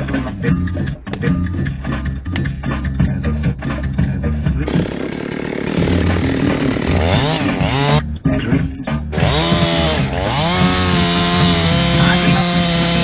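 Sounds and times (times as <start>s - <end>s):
chainsaw running: 4.6s - 8.0s, 9.1s - 13.0s.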